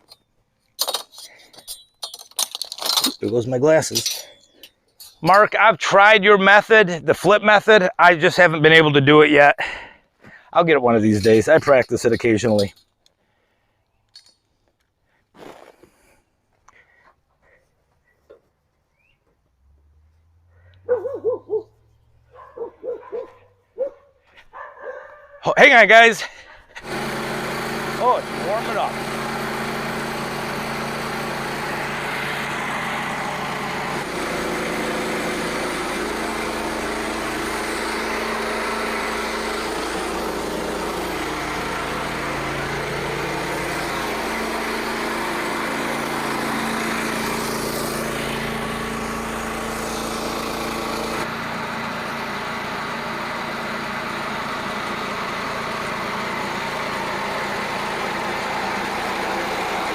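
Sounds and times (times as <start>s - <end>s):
small gasoline engine running: 26.8s - 59.9s.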